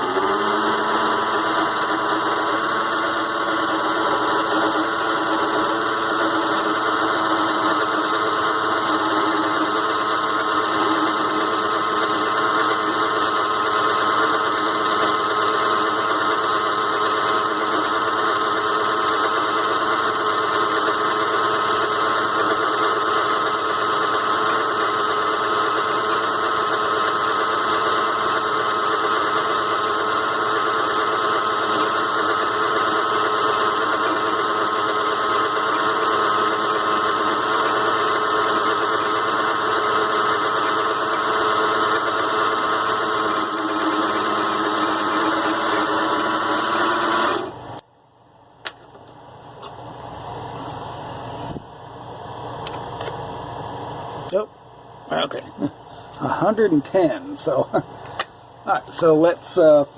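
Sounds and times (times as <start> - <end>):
mini lathe motor whining: 0.0 - 47.7.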